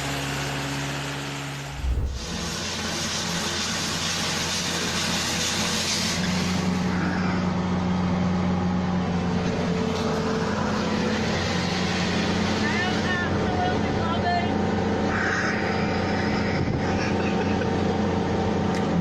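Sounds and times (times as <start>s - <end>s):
vehicle engine running: 1.7s - 2.9s.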